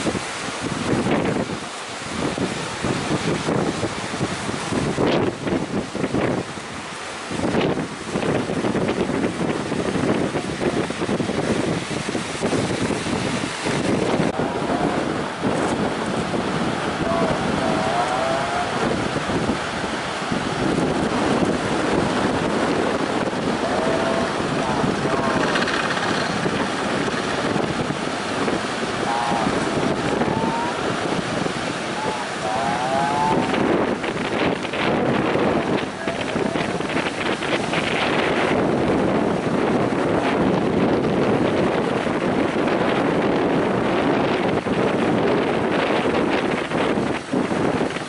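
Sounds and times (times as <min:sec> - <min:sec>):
sea waves breaking: 0:00.0 - 0:48.0
wind buffeting microphone: 0:00.0 - 0:48.0.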